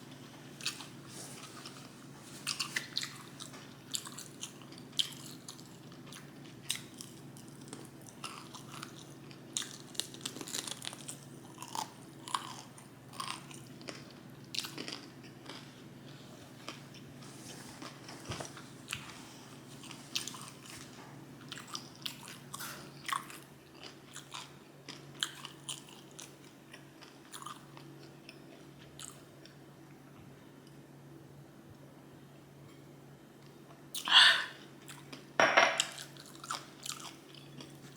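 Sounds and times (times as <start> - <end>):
person chewing and biting: 0.6 - 15.7, 19.8 - 29.2, 35.8 - 37.9.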